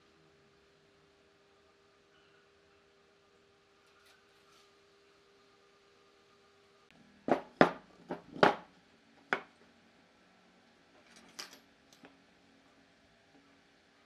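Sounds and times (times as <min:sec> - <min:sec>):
objects knocking and clattering: 0:07.3 - 0:08.7.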